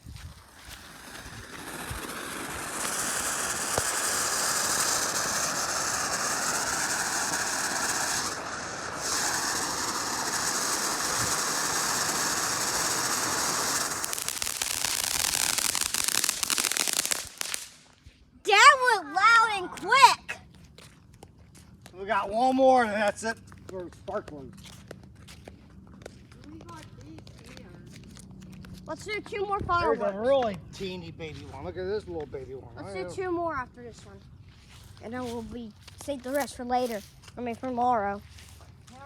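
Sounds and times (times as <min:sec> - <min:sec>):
firework hissing and crackling: 0:00.0 - 0:18.7.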